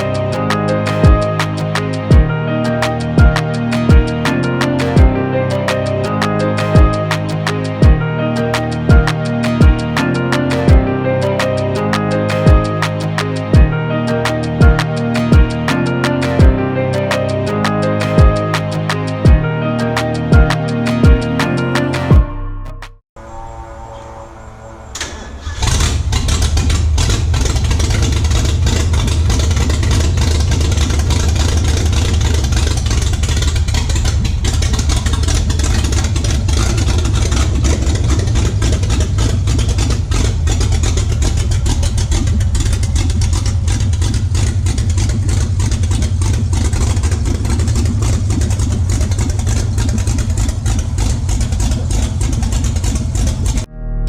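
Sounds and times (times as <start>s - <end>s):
car engine deep rumble: 24.9s - 53.8s.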